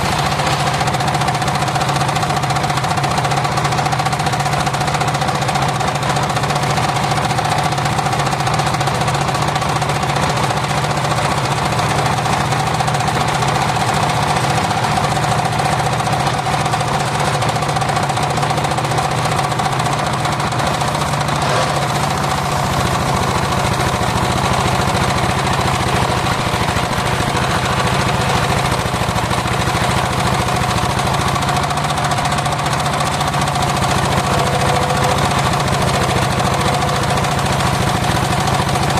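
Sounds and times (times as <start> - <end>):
saw blade whine: 0.0 - 3.2, 19.7 - 38.9
engine chugging: 0.0 - 38.9.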